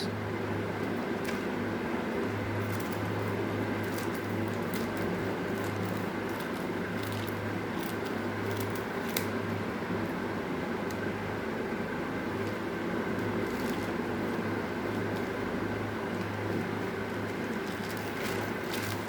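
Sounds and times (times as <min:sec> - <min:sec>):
fan humming: 0:00.0 - 0:19.0
plastic bag crackling: 0:02.6 - 0:09.4, 0:13.2 - 0:15.5, 0:16.1 - 0:19.0.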